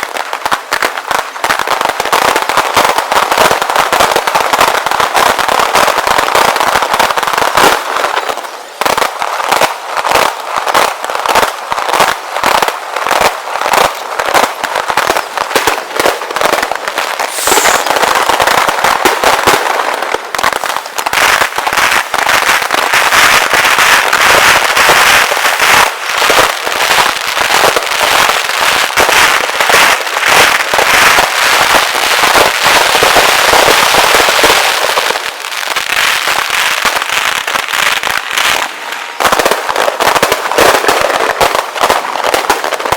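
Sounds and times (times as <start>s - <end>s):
fireworks cracks and bangs: 0.0s - 42.9s
firework whistle: 13.2s - 26.4s.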